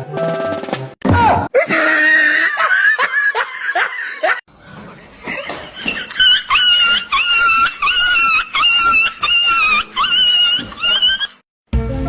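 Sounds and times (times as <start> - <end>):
person laughing hard: 1.6 - 4.4, 5.2 - 11.4.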